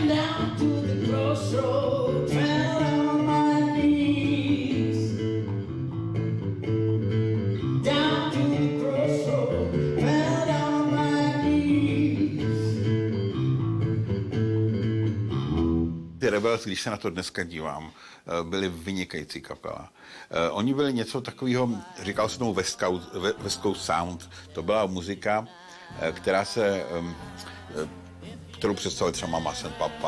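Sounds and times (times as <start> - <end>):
person singing: 0.0 - 5.4, 7.6 - 13.0, 21.4 - 30.0
bass line: 0.0 - 16.2, 22.0 - 30.0
guitar: 0.0 - 17.2, 20.5 - 30.0.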